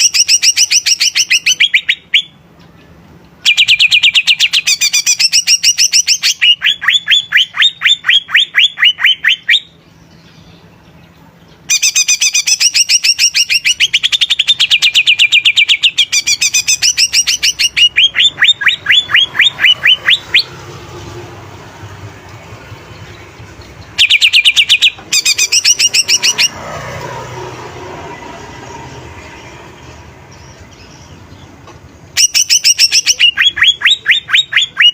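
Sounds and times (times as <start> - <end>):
bird singing chattering whistles: 0.0 - 2.4, 3.4 - 10.0, 11.7 - 20.5, 23.8 - 26.5, 32.1 - 34.9.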